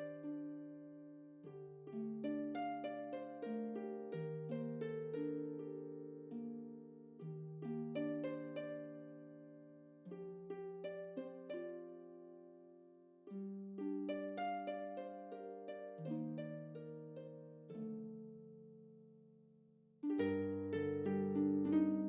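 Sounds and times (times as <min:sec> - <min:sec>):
plucked harp-like melody: 0:00.0 - 0:19.0, 0:20.0 - 0:22.0.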